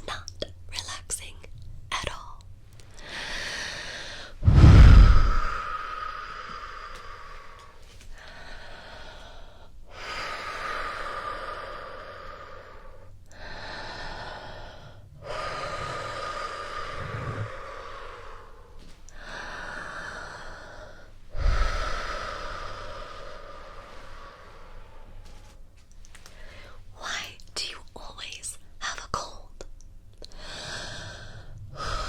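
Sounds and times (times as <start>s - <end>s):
deep breathing close to microphone: 3.0s - 26.9s, 30.3s - 32.0s
low thump: 4.4s - 5.6s.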